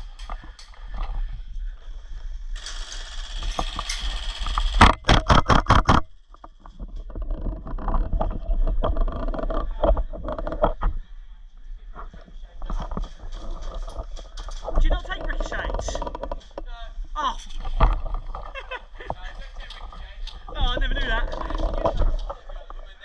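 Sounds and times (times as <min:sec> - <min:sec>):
rustling movement: 0:06.1 - 0:23.0.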